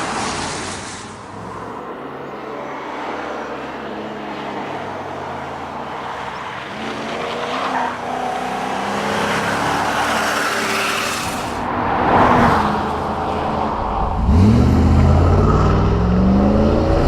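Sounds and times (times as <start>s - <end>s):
car engine accelerating hard: 14.1s - 17.0s.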